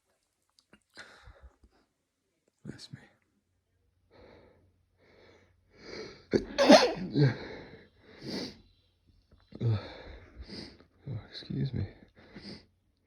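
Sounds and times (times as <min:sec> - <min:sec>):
man sneezing: 0:06.4 - 0:07.1.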